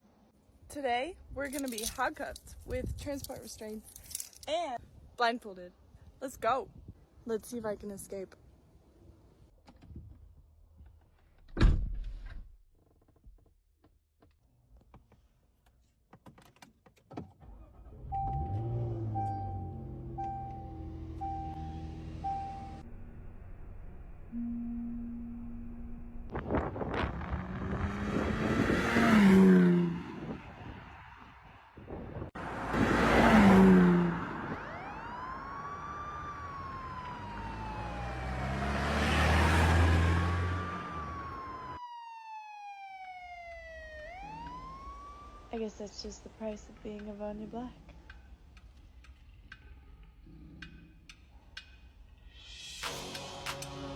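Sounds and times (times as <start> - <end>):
handcuff chain clicking and rattling: 1.4 - 4.7
engine rumble: 17.4 - 41.8
low electronic drone: 19.1 - 26.4
vehicle passing: 26.3 - 41.8
siren wailing: 33.8 - 45.5.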